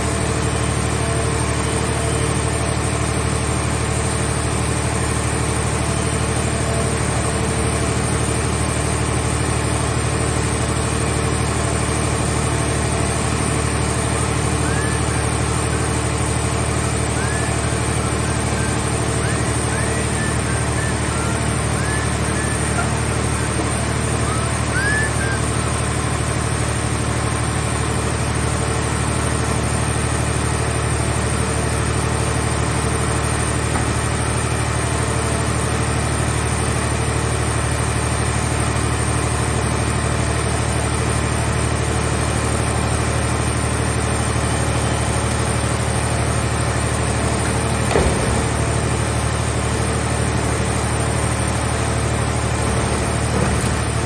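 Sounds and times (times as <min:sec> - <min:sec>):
baler engine running: 0:00.0 - 0:54.0
short knock: 0:47.8 - 0:48.6.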